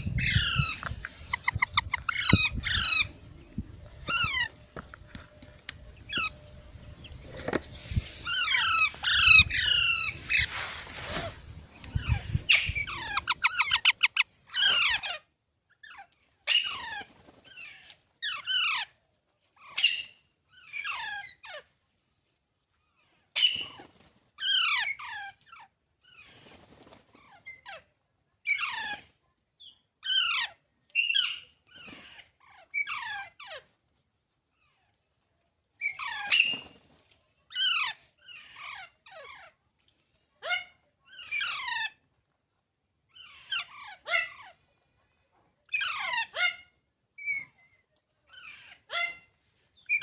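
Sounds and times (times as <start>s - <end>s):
parrot chicks calling: 0.0s - 4.7s, 5.8s - 15.2s, 43.2s - 44.5s.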